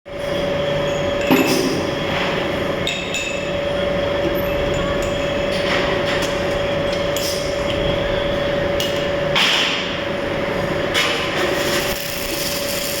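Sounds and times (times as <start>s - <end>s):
steady hum: 0.1s - 13.0s
welding arc crackling and hissing: 11.4s - 13.0s.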